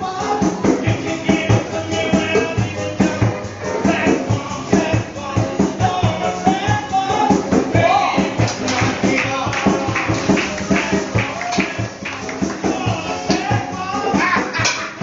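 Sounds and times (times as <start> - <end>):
song with singing voice: 0.0 - 15.0.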